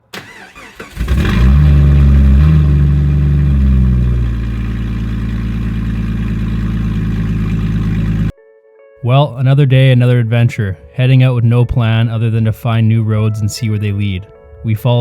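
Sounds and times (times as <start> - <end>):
car engine revving and idling: 0.2 - 8.3.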